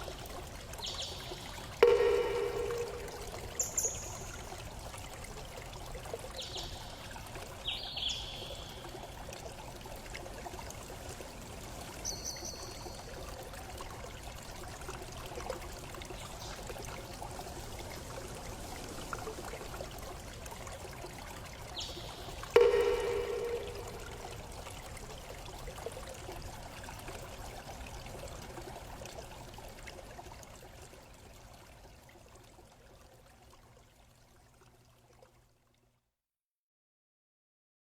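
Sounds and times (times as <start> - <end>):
running water: 0.0 - 35.3
bird chirps: 1.8 - 4.3.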